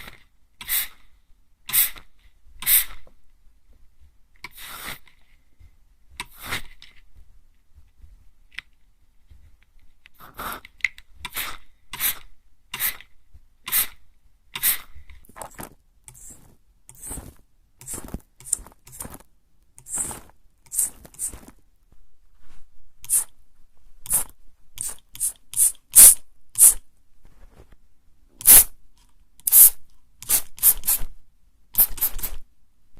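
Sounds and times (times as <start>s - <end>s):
spray bottle hissing puffs: 0.6s - 1.0s, 1.7s - 2.0s, 2.6s - 3.0s, 11.3s - 12.2s, 12.8s - 13.0s, 13.7s - 14.0s, 14.6s - 14.9s, 16.1s - 19.0s, 19.8s - 21.4s, 23.0s - 23.3s, 24.0s - 26.8s, 28.4s - 28.7s, 29.4s - 31.1s, 31.8s - 32.4s.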